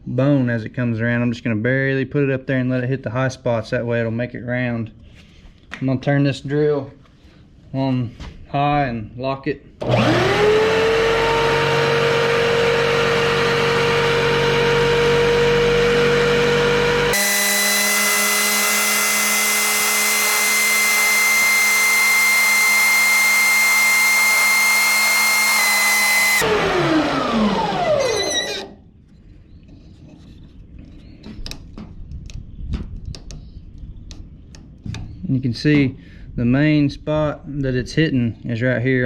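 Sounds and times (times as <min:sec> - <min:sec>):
electric drill motor whining: 0:09.8 - 0:28.8.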